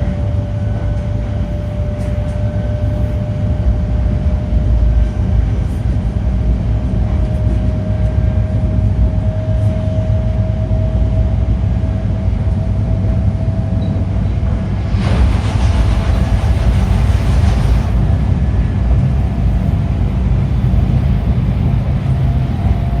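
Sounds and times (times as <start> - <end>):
train low rumble: 0.0 - 23.0
rushing noise: 14.5 - 21.9.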